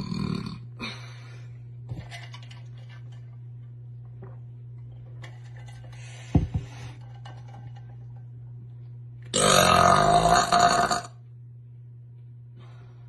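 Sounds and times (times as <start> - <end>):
woman burping loudly: 0.0 - 0.9, 9.3 - 11.2.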